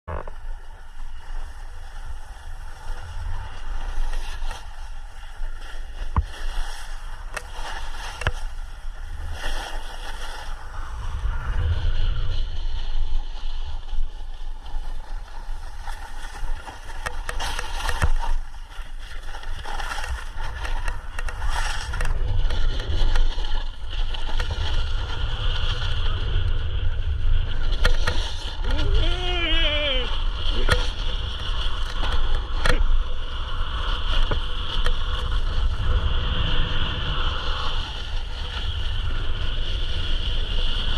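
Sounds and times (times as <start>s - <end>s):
wind rumbling on microphone: 0.1s - 40.9s
skis hissing over snow: 0.5s - 26.4s
ski edge scrapes: 15.2s - 25.9s.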